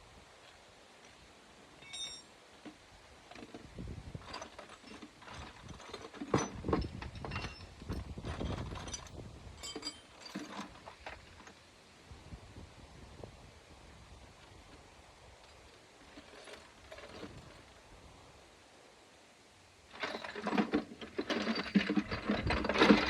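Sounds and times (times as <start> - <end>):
ringing metallic clinks: 1.8 - 2.4, 8.8 - 10.6
hand tools clinking and knocking: 1.8 - 3.6, 4.2 - 11.6, 19.9 - 23.0.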